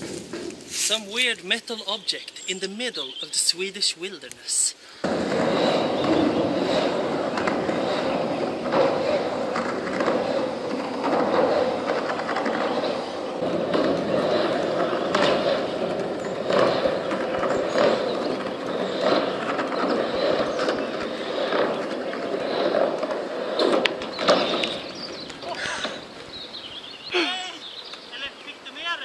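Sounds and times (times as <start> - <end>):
skateboard wheels rolling: 0.0 - 2.4, 5.0 - 28.1
skateboard knocks and clicks: 5.0 - 26.3.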